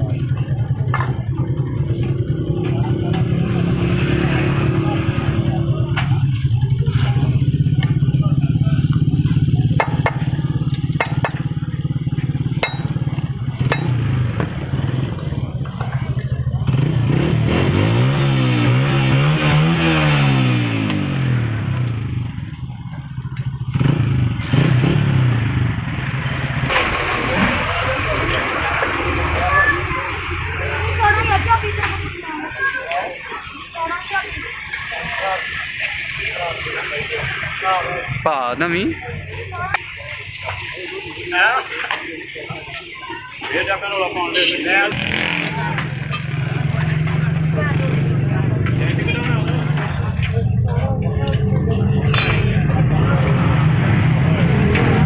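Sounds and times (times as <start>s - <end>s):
motorcycle engine idling: 0.0s - 3.3s, 5.5s - 17.2s, 20.4s - 24.4s.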